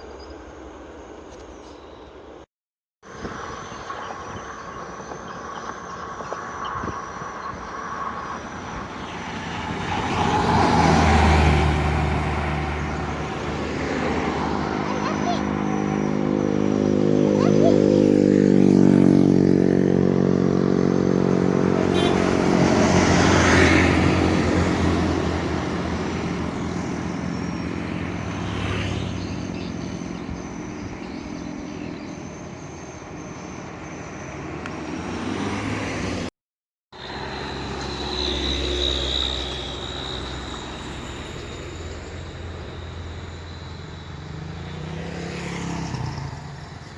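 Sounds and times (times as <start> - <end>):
diesel buses labouring uphill: 4.6 - 32.0, 37.0 - 45.2.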